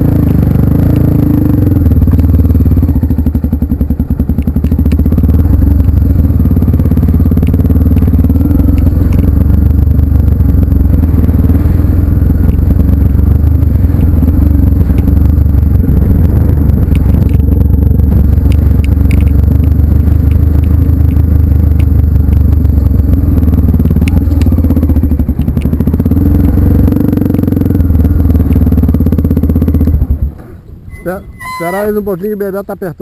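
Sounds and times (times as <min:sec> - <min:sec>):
motorcycle engine running: 0:00.0 - 0:33.0
clicks and rattles: 0:18.4 - 0:22.4.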